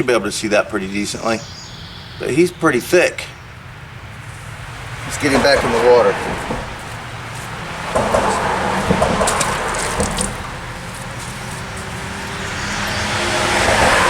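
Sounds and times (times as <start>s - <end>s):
passing cars: 0.0s - 14.0s
handling knocks and rustles: 6.4s - 12.2s.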